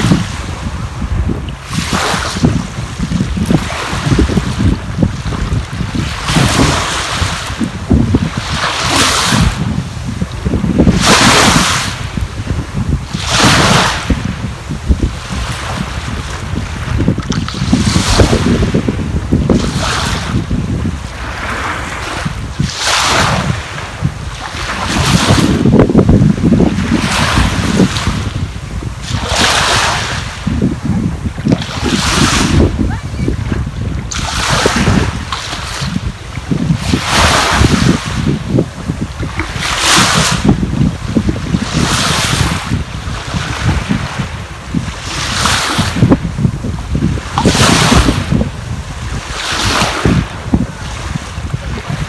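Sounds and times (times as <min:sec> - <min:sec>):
waves washing onto shore: 0:00.0 - 0:52.0
wind buffeting microphone: 0:00.0 - 0:52.0.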